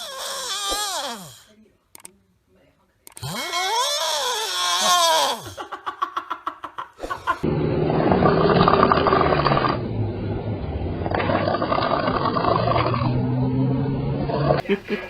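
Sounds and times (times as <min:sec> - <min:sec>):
high wavering snoring whine: 0:07.4 - 0:14.6
loud rough rumbling snore: 0:07.4 - 0:14.6.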